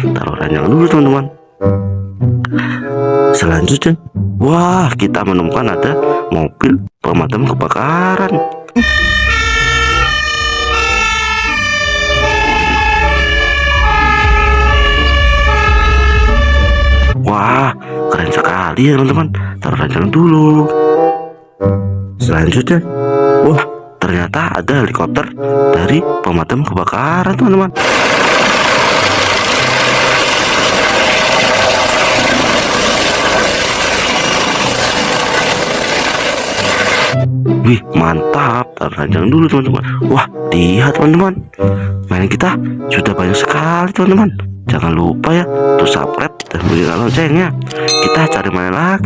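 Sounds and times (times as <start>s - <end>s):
fire engine siren: 8.8s - 17.2s, 27.8s - 37.2s
high whine: 27.8s - 37.2s.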